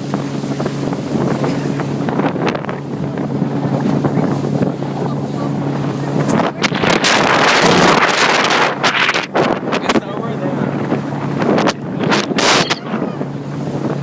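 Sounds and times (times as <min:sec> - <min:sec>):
motorboat engine humming: 0:00.0 - 0:14.0
wind buffeting microphone: 0:00.0 - 0:14.0.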